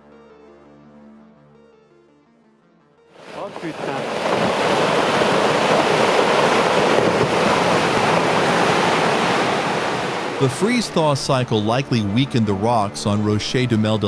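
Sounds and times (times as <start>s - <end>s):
rockfall roaring: 3.2s - 10.5s.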